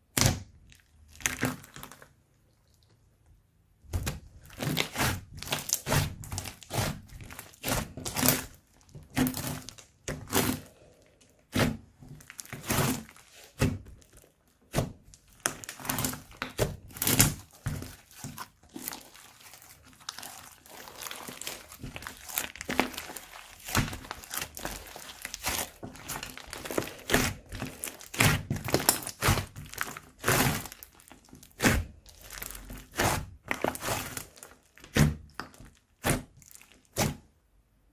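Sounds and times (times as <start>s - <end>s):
slime squeezed by hand: 11.4s - 37.2s.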